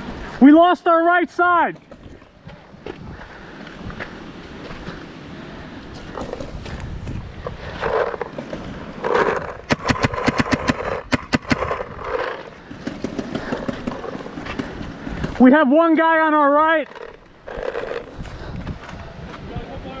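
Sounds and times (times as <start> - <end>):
paintball marker firing: 9.3 - 12.2.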